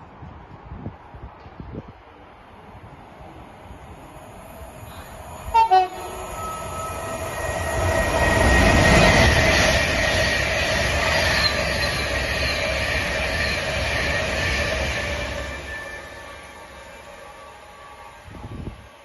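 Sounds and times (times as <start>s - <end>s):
train rumble: 0.0s - 19.0s
train two-tone horn: 5.5s - 7.0s.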